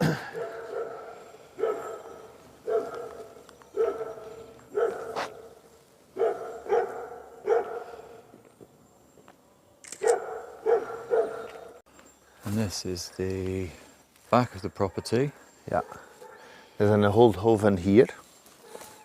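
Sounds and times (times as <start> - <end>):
dog barking: 0.3 - 5.6, 6.2 - 8.0, 10.0 - 11.8, 15.8 - 16.5, 18.6 - 19.0.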